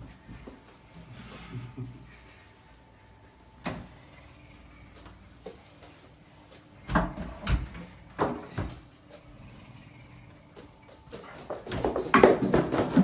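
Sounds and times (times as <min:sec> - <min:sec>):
knocks and thumps indoors: 0:11.1 - 0:13.0.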